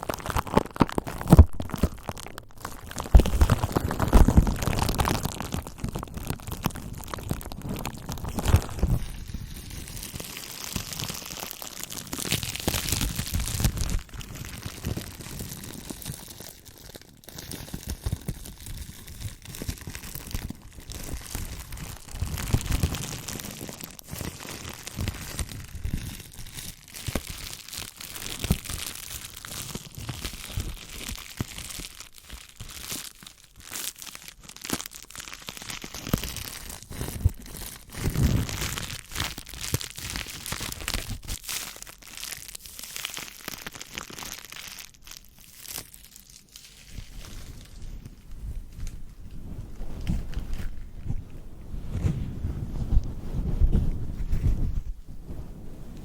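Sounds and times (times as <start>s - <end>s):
bubble wrap crinkling: 0.0s - 56.0s
rubbing of microphone windscreen: 7.4s - 10.0s, 38.0s - 38.8s, 47.0s - 56.0s.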